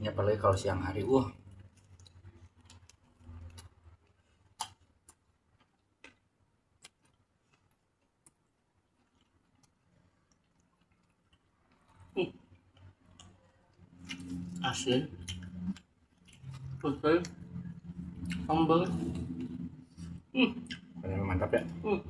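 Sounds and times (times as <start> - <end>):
faint eating clicks and taps: 1.4 - 14.6.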